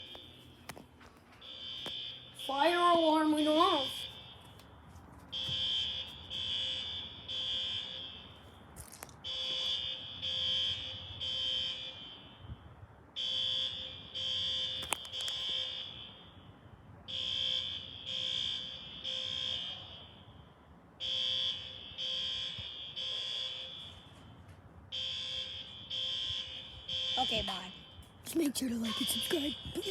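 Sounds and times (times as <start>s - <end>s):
fire alarm high beeps: 0.0s - 4.7s, 5.3s - 29.9s.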